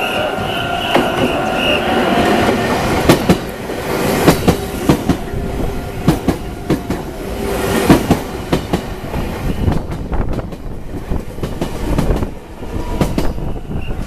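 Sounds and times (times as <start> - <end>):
train rumble: 0.0 - 14.0.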